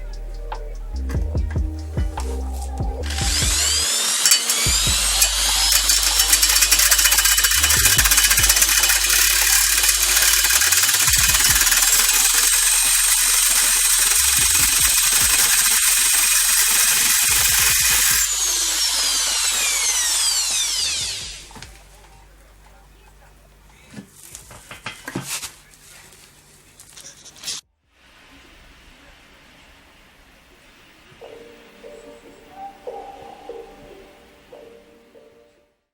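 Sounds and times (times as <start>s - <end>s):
angle grinder motor whining: 2.0s - 22.2s.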